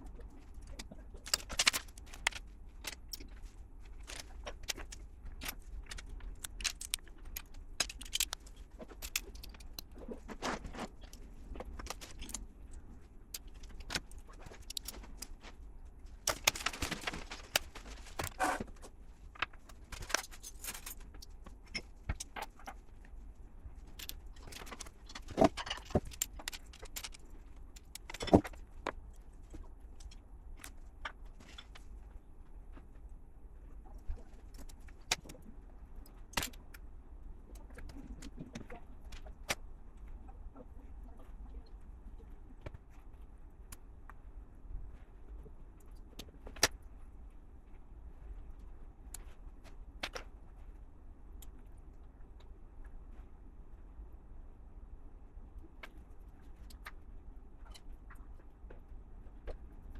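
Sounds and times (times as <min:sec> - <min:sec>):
plastic toy bricks clicking: 0:04.1 - 0:09.9.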